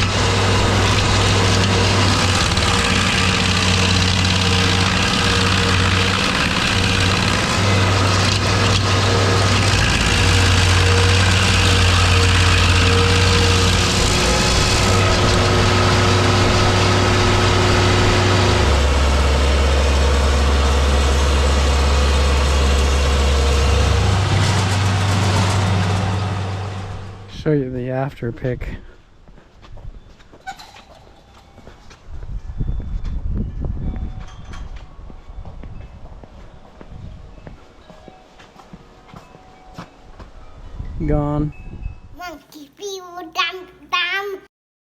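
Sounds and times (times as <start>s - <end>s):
heavy engine running: 0.0s - 27.3s.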